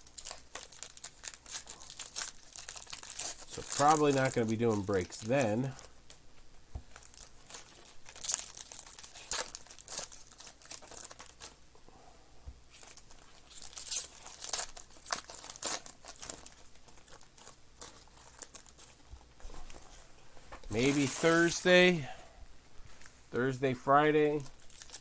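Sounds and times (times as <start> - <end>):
card pack wrappers crinkling and tearing: 0.0 - 6.2, 6.9 - 11.6, 12.7 - 19.1, 20.6 - 21.9, 24.4 - 25.0
cards being handled: 20.6 - 21.6.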